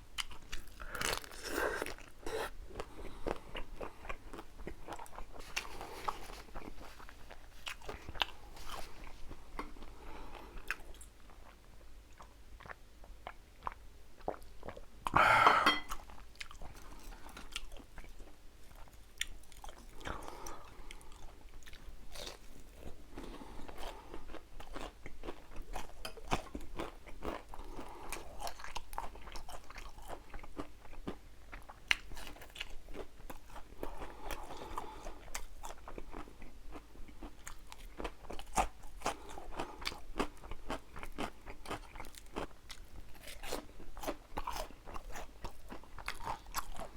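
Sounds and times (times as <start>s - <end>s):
crunchy chewing: 0.2s - 15.2s, 15.9s - 46.9s.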